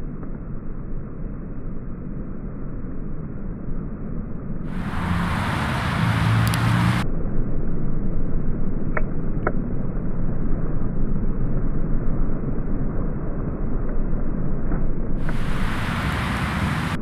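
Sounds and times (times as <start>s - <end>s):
thunder rumbling: 4.7s - 7.0s, 15.2s - 17.0s.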